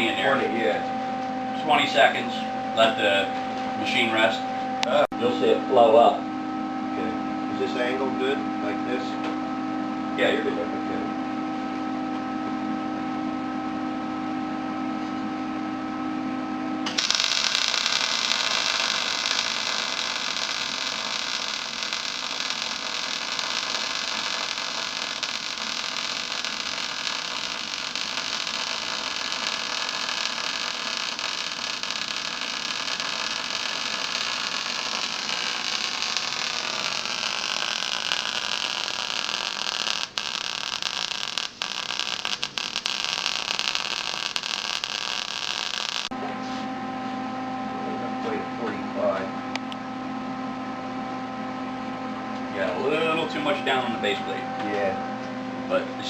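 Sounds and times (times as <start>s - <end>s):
welding arc crackling hiss: 16.9s - 46.1s.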